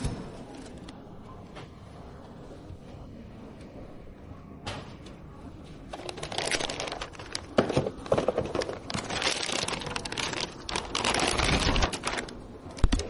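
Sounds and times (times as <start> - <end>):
crinkling and rustling: 5.7 - 13.0.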